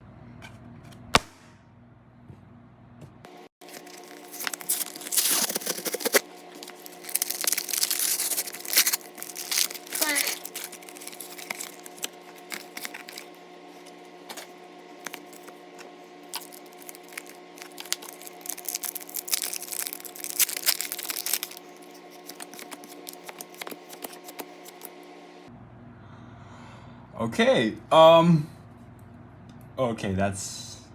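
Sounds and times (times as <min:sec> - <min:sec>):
steady low hum: 0:00.0 - 0:30.9
plastic and foil packaging crinkling: 0:03.6 - 0:24.9.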